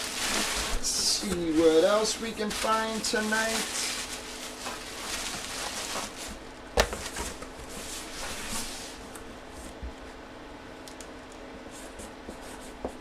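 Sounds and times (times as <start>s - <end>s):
rustling on a tabletop: 0.0s - 10.2s
faint steady hum: 0.0s - 13.0s.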